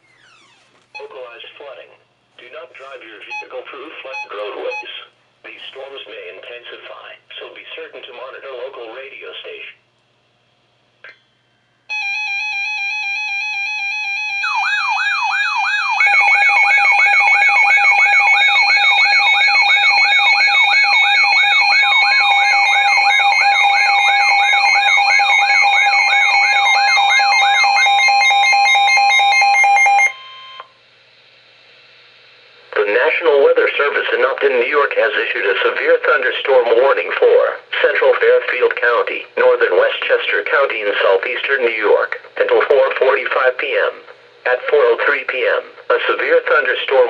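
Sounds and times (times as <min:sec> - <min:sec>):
steady single alarm tone: 0:11.9 - 0:15.3, 0:15.9 - 0:30.8.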